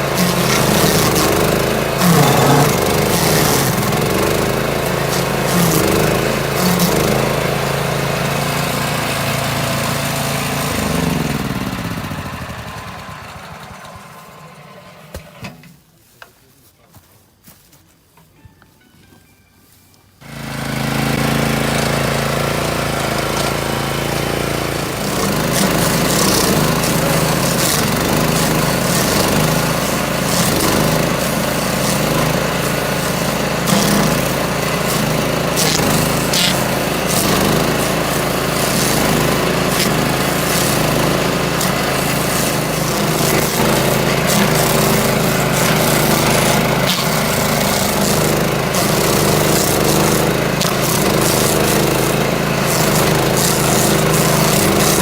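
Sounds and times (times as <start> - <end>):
stump grinder engine running: 0.0 - 15.2, 20.2 - 55.0
cutter wheel grinding stump: 0.0 - 15.7, 20.2 - 55.0.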